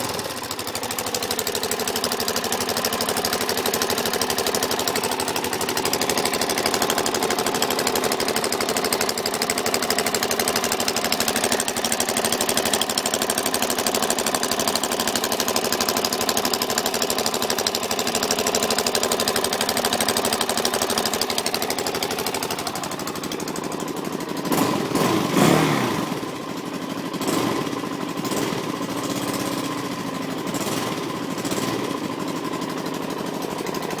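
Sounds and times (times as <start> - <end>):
fast loud engine clicking: 0.0 - 34.0
motorcycle engine running: 0.0 - 34.0.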